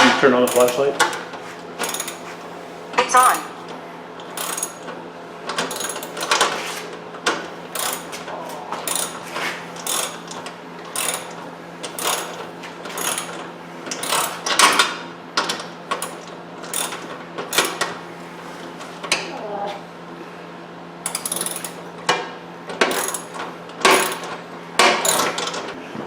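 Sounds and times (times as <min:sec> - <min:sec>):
ratchet wrench clicking: 0:00.5 - 0:01.2, 0:01.8 - 0:02.2, 0:04.4 - 0:04.9, 0:05.5 - 0:06.5, 0:07.7 - 0:08.1, 0:08.9 - 0:09.2, 0:09.8 - 0:14.9, 0:16.0 - 0:17.9, 0:21.0 - 0:21.8, 0:22.8 - 0:25.6.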